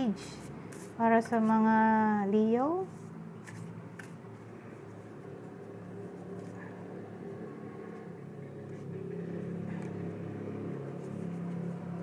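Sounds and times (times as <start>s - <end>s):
vehicle engine humming: 0.0s - 12.0s.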